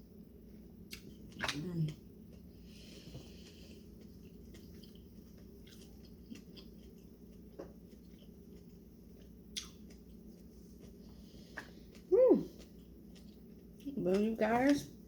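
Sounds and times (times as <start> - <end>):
low steady hum: 0.0 - 15.0
chewing food: 0.8 - 15.0
wet mouth clicks: 9.6 - 10.0.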